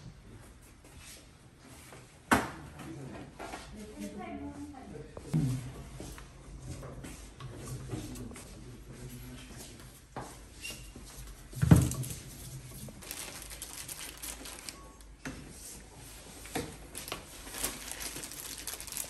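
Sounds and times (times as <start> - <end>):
rustling: 12.0 - 14.8, 16.9 - 19.0.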